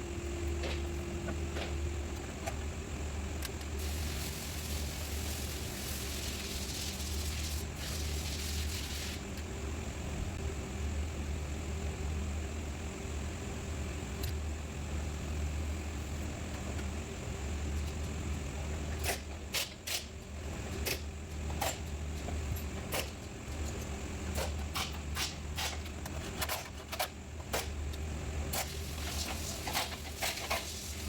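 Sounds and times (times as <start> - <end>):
hiss: 3.8 - 9.3, 28.5 - 31.0.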